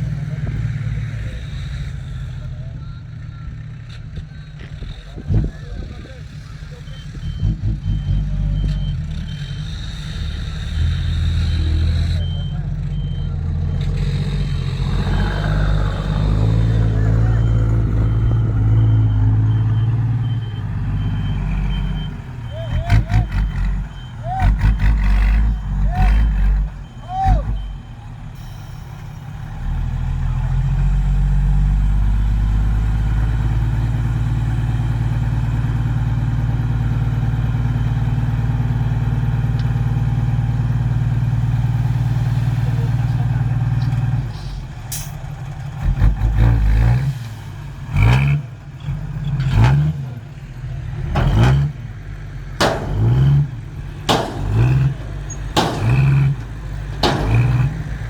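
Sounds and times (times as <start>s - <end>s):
diesel truck engine revving: 0.0s - 58.0s
sharp knocks: 52.6s - 58.0s.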